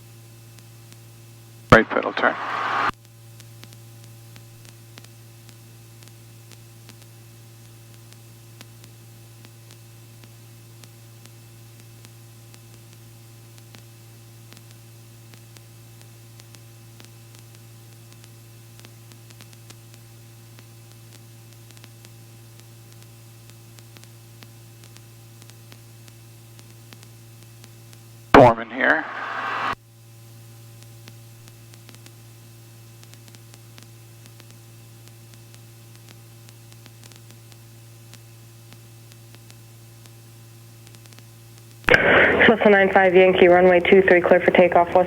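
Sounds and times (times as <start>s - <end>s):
intercom low hum: 1.7s - 2.9s, 28.4s - 29.8s, 41.9s - 45.0s
faint hiss: 1.8s - 2.9s, 28.8s - 29.8s.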